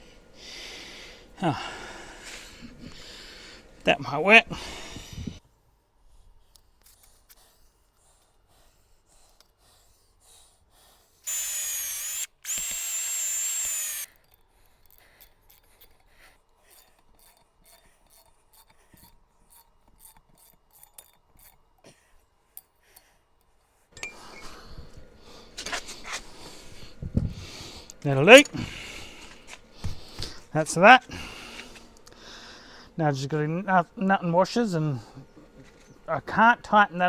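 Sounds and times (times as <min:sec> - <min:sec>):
power drill whining: 0:11.3 - 0:14.1.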